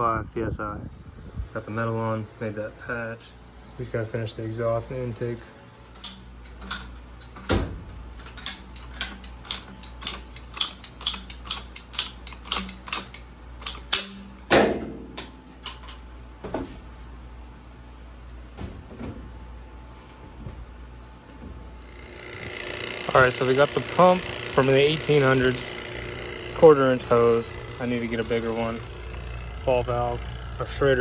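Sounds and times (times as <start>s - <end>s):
steady low hum: 0.0s - 31.0s
hand tools clicking and knocking: 6.0s - 16.1s.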